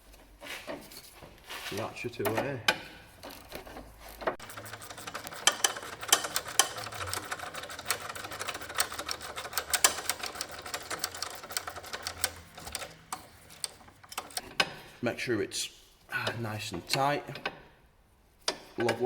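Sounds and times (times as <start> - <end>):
socket ratchet clicking: 4.4 - 14.4.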